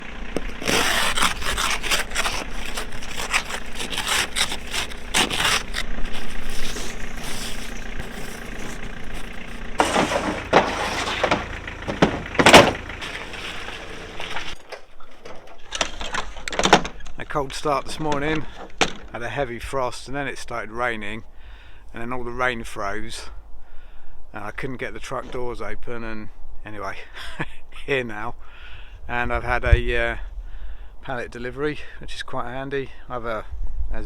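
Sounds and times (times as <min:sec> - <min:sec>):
low steady hum: 0:00.0 - 0:19.9
scraping and rubbing strokes: 0:00.4 - 0:14.6.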